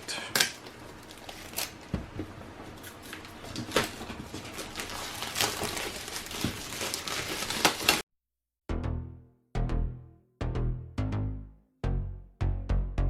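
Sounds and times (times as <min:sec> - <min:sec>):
packaging rustling: 0:00.3 - 0:08.0.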